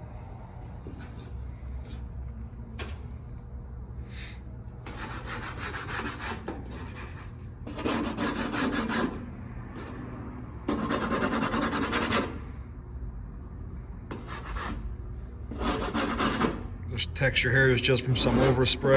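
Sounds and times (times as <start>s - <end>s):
scraper rasping on metal: 4.8s - 10.0s, 10.7s - 12.4s, 14.1s - 14.8s, 15.5s - 16.7s, 17.8s - 18.9s.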